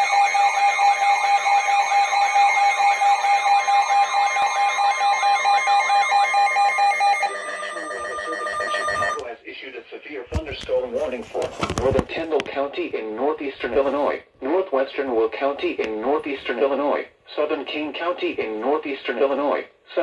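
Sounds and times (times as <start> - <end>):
steady beeping tones: 0.0 - 9.2
warbling emergency alert tone: 0.0 - 9.2.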